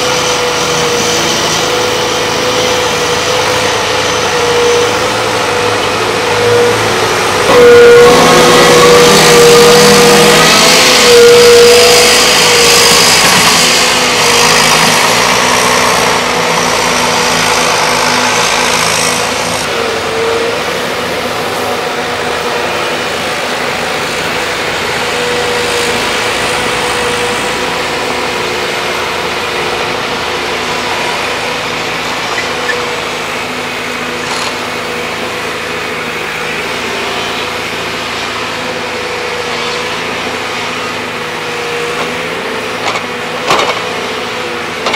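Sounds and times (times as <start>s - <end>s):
excavator diesel engines under load: 0.0s - 44.9s
steady whining tone: 0.0s - 44.9s.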